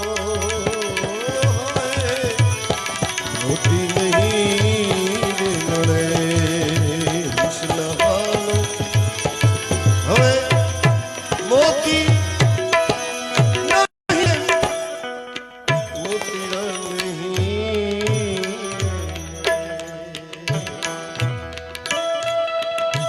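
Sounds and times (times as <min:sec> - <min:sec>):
tabla beat: 0:00.0 - 0:23.0
sliding lead melody: 0:00.1 - 0:17.0.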